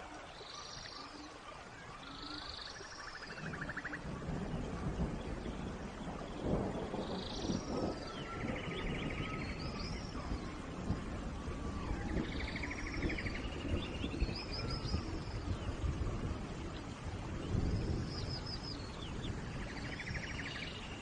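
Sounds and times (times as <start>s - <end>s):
steady rain falling: 0.0s - 21.0s
wild birds calling: 0.0s - 21.0s.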